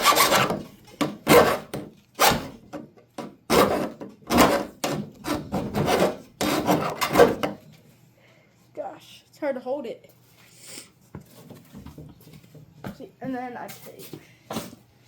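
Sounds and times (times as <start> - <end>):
hand file rasping on metal: 0.0 - 2.5, 3.5 - 7.6.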